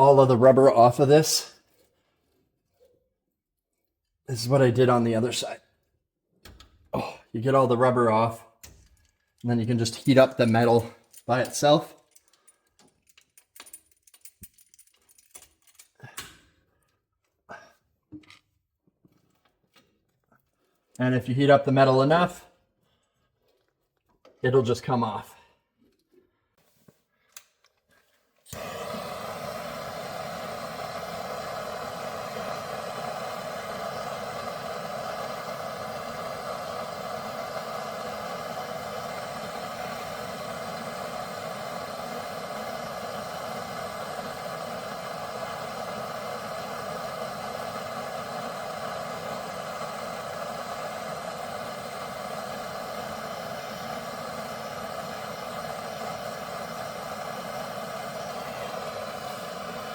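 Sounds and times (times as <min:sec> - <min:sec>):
gas torch flame burning: 0:00.0 - 0:01.5, 0:09.5 - 0:11.9, 0:28.5 - 0:59.9.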